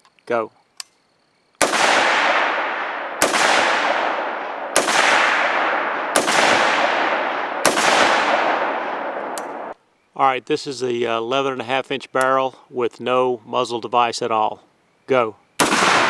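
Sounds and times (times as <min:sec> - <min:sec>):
rifle shots with echo: 0:01.6 - 0:09.8, 0:15.6 - 0:16.0.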